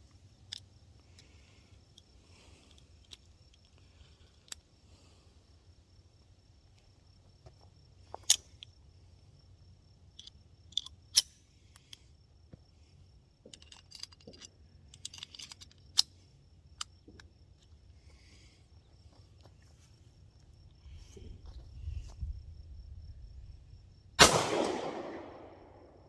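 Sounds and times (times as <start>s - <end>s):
pistol metallic clicks: 10.2s - 12.0s, 24.2s - 25.9s.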